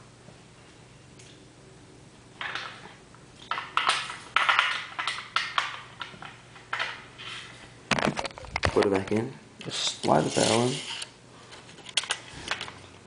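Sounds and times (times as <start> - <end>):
cleaning rod scraping in barrel: 10.0 - 11.1.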